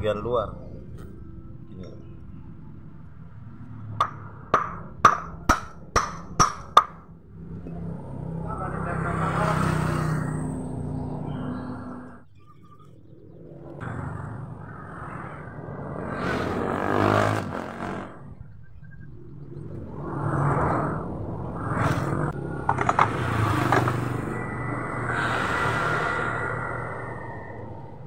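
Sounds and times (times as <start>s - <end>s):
scooter engine revving: 16.2s - 18.2s.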